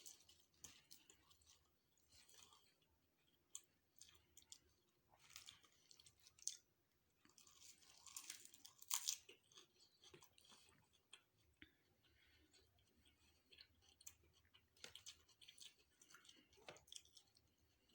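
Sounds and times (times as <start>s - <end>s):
food being chewed with crunching: 0.0s - 17.9s.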